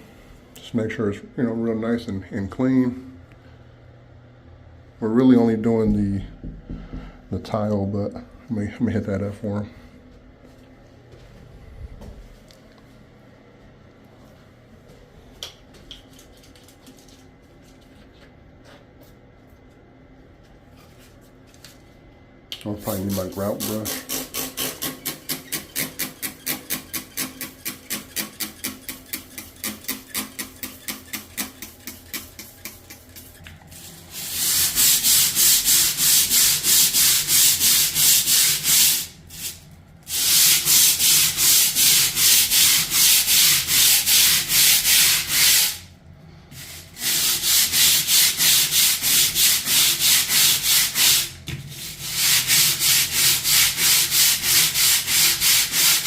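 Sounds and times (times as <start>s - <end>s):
brush scrubbing tile grout: 22.7s - 45.8s, 46.5s - 56.0s.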